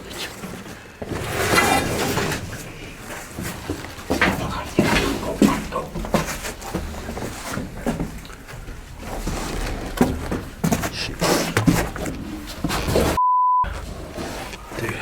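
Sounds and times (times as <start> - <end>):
scuffing footsteps: 0.1 - 15.0
rustling and knocking: 0.4 - 15.0
censor bleep: 13.2 - 13.7.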